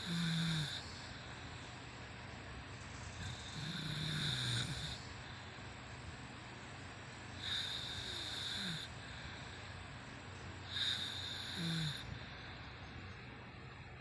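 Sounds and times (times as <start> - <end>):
woman snoring: 0.0 - 0.9, 3.2 - 5.0, 7.4 - 9.0, 10.7 - 12.2.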